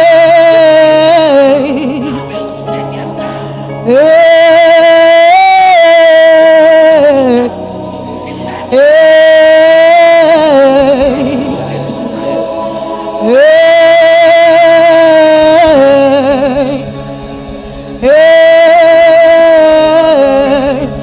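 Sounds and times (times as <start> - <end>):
low steady tone: 0.0 - 21.0
person singing long notes: 0.0 - 21.0.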